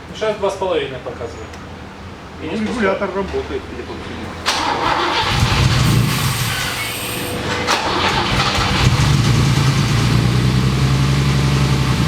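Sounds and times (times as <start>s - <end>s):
engine droning: 3.8s - 12.0s
engine starter cranking: 4.3s - 10.3s.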